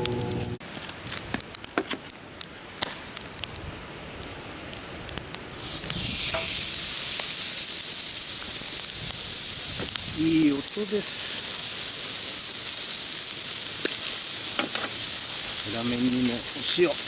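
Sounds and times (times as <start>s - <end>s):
wood fire crackling and popping: 0.0s - 17.0s
meat sizzling on griddle: 5.4s - 17.0s.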